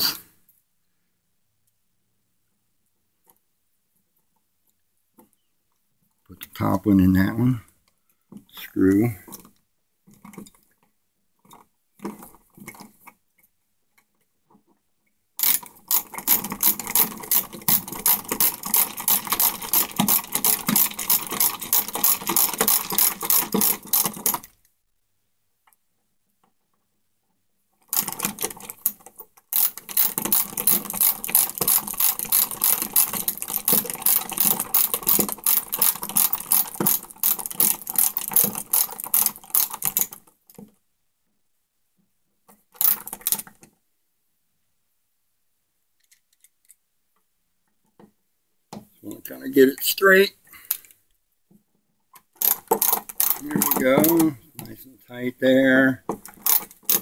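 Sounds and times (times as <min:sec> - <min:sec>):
ratcheting screwdriver clicking: 0:15.4 - 0:24.5, 0:29.6 - 0:40.1, 0:56.1 - 0:57.0.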